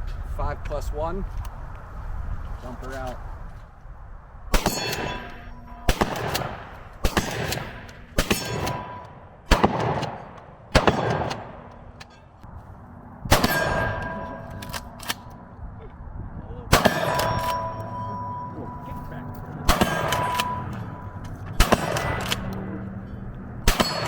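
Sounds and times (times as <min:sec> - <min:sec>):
shotgun shots: 0:04.5 - 0:12.0, 0:13.3 - 0:15.2, 0:16.7 - 0:17.7, 0:19.6 - 0:22.7, 0:23.6 - 0:24.0
short ringing tone: 0:05.1 - 0:05.9, 0:17.1 - 0:21.2.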